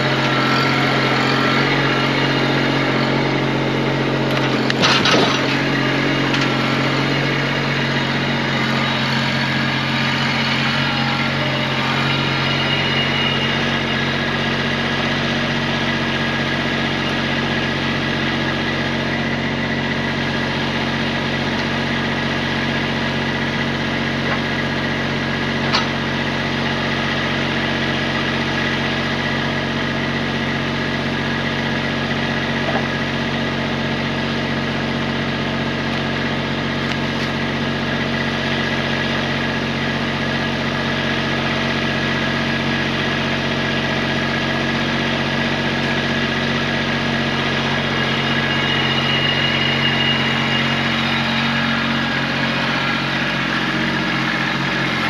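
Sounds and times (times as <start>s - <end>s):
tractor diesel engine idling: 0.0s - 55.0s.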